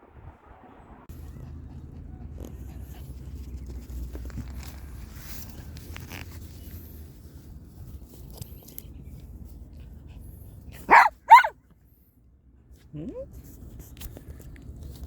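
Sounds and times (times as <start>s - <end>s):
small dog yipping: 10.8s - 11.5s.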